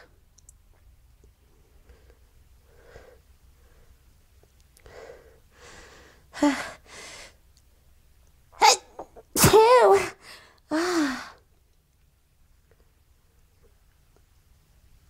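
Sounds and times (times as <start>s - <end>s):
woman breathing in: 4.8s - 7.4s
woman sneezing: 8.6s - 10.2s.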